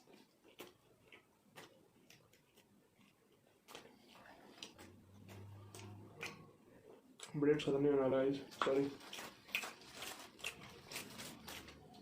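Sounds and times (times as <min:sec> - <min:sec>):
mouth clicks of chewing: 0:00.0 - 0:06.5.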